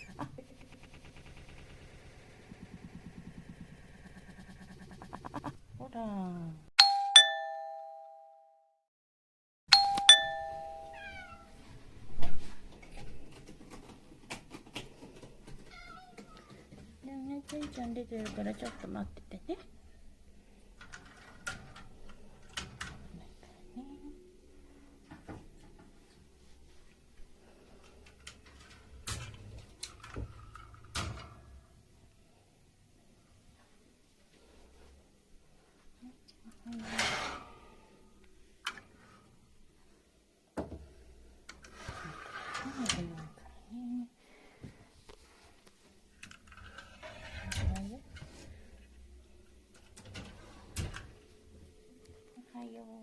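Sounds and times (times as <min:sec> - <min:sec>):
two-tone doorbell chime: 0:06.8 - 0:08.8, 0:09.7 - 0:11.3
cat meowing: 0:11.0 - 0:11.6, 0:15.7 - 0:16.6.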